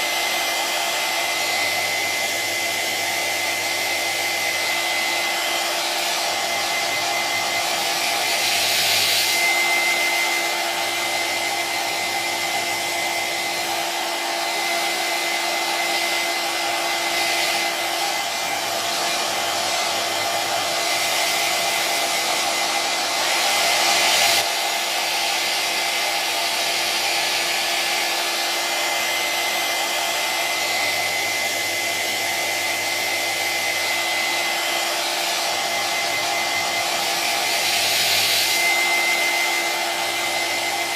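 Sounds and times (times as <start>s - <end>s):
hair dryer running: 0.0s - 40.9s.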